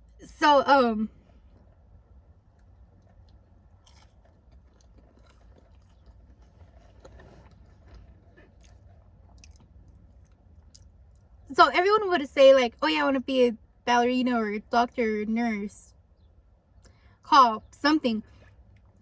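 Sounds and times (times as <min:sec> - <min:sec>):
faint close-up chewing: 0:01.2 - 0:11.4, 0:16.7 - 0:17.2, 0:18.2 - 0:19.0
crunchy bites: 0:02.5 - 0:11.3.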